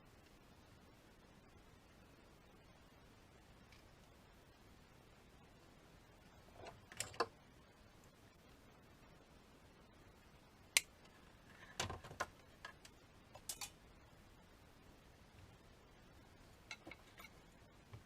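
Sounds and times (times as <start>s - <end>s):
small parts clicking: 11.8s - 13.8s.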